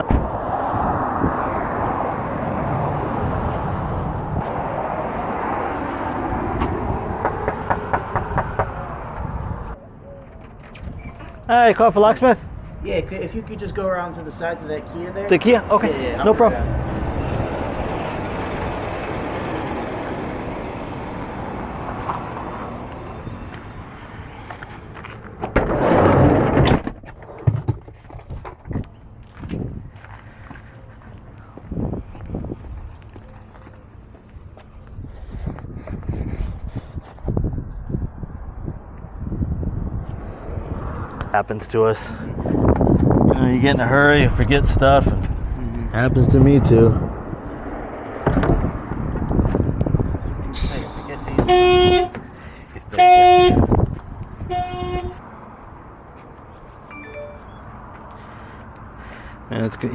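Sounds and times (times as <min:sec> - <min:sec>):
vehicle running rumble: 0:12.4 - 0:56.8.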